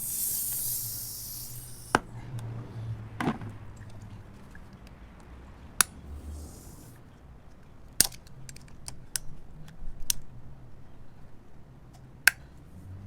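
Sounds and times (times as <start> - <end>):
air hissing out of tire: 0.0 - 2.1, 6.1 - 7.0.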